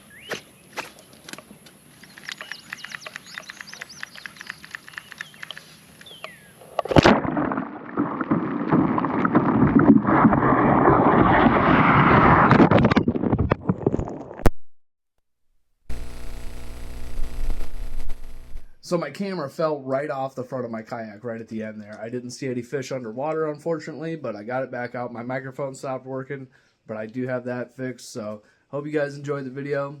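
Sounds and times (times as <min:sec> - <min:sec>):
small clicks: 0:01.2 - 0:06.9
bird chirps: 0:02.0 - 0:06.6
camera splashing into water: 0:06.7 - 0:11.5
muffled underwater rushing water: 0:06.7 - 0:12.5.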